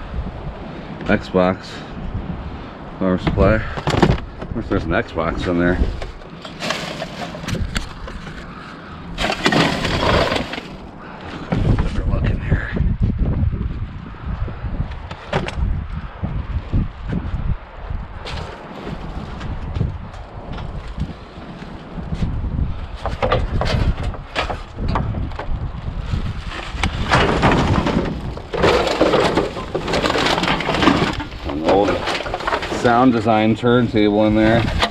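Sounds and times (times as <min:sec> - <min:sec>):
wind buffeting microphone: 0:00.0 - 0:34.9
rustling and scraping: 0:05.3 - 0:12.0, 0:18.2 - 0:34.9
hard objects clattering: 0:06.0 - 0:08.5, 0:09.2 - 0:11.0, 0:26.4 - 0:33.3, 0:34.4 - 0:34.9.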